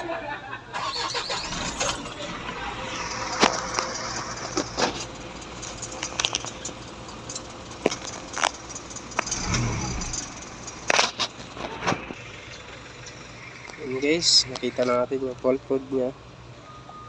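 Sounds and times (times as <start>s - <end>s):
diesel engine running: 0.8s - 17.0s
low rumble: 8.1s - 10.9s.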